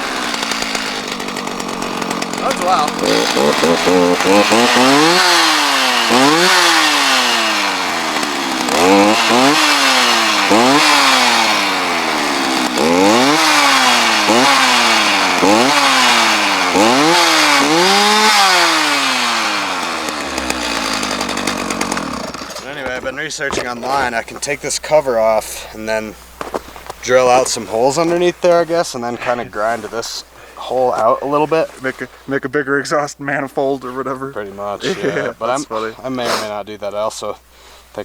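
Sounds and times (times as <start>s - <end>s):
chainsaw engine revving: 0.0s - 22.8s, 34.6s - 36.5s.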